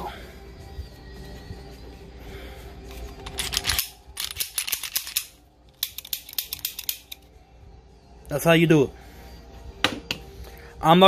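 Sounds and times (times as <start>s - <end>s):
pistol slide metallic clicks: 3.3s - 7.2s.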